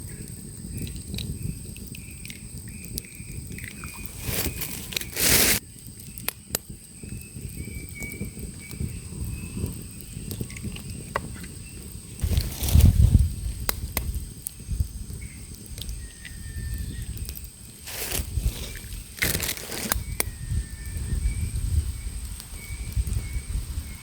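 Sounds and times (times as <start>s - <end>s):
campfire crackling and popping: 0.0s - 24.0s
loud crunching noise: 4.1s - 5.6s, 12.2s - 13.8s, 17.8s - 20.3s.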